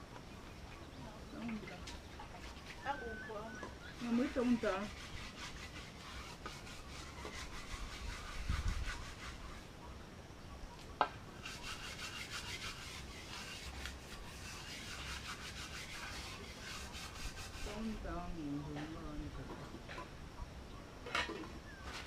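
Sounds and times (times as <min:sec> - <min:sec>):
rhythmic rubbing strokes: 0:02.3 - 0:09.7, 0:11.3 - 0:18.3.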